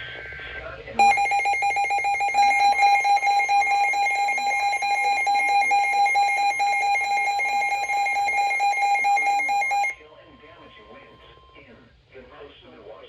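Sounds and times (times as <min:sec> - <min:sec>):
electronic alert tone: 0:01.0 - 0:10.0.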